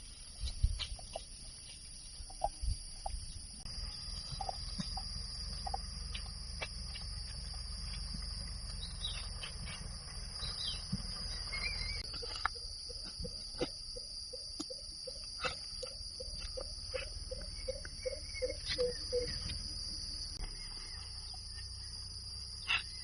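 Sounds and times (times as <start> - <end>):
bird calls and chirps: 7.1 - 23.0.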